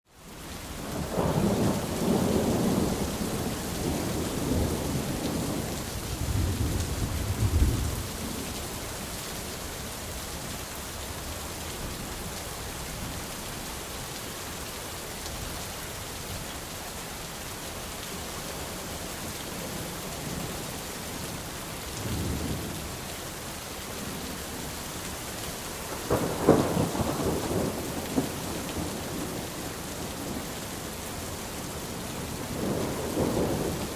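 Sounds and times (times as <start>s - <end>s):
steady rain: 0.0s - 33.9s
thunder rumbling: 1.1s - 8.6s, 25.9s - 30.4s, 31.9s - 33.9s.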